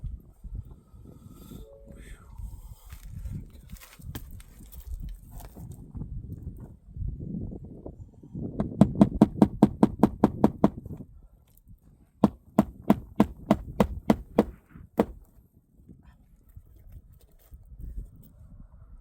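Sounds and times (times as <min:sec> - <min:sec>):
hammer driving nails into shingles: 0:08.6 - 0:10.8, 0:12.2 - 0:15.3.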